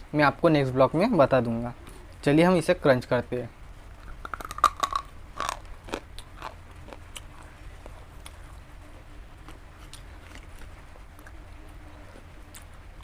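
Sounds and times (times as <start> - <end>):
crunchy chewing: 4.0 - 8.7, 9.4 - 13.0.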